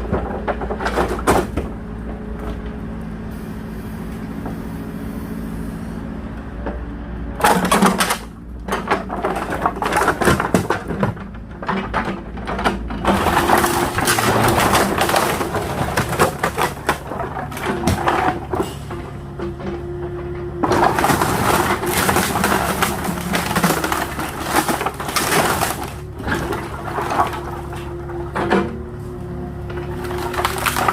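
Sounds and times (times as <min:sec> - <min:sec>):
wood boards cracking and splintering: 0:00.0 - 0:01.8, 0:07.4 - 0:19.1, 0:20.6 - 0:28.8, 0:29.6 - 0:30.9
excavator engine running: 0:00.0 - 0:30.9.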